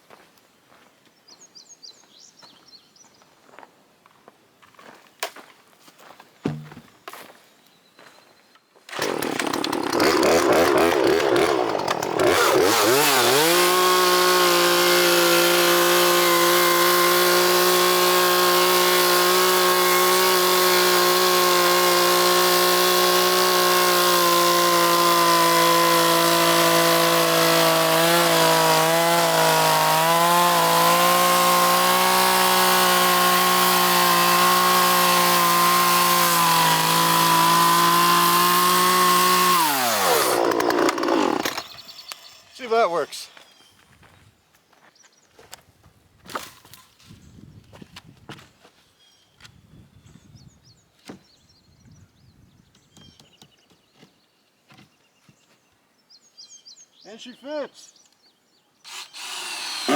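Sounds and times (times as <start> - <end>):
chainsaw revving: 8.9 - 43.2, 58.9 - 59.9.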